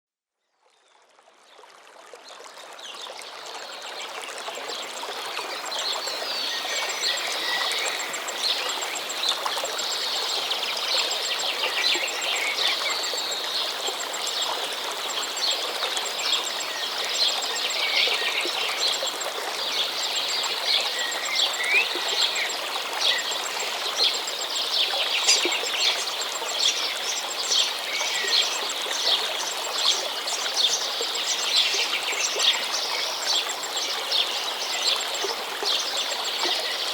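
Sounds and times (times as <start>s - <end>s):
stream flowing: 0.7s - 36.9s
small birds chirping: 24.0s - 29.2s.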